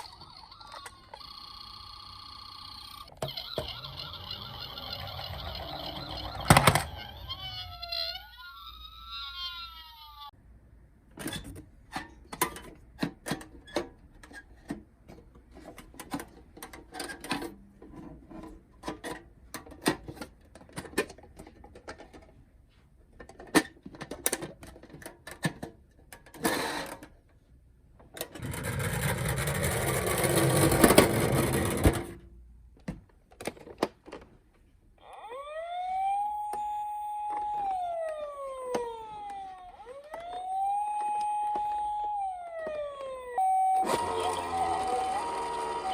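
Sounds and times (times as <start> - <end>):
plastic toys clicking and knocking: 0.0 - 8.1, 11.4 - 22.5, 23.1 - 27.2, 32.8 - 34.4, 36.4 - 45.9
toy electronic siren wailing: 0.0 - 10.3, 35.0 - 45.9
toy wheels rolling and whirring: 0.0 - 10.3, 28.2 - 32.1, 35.1 - 45.9.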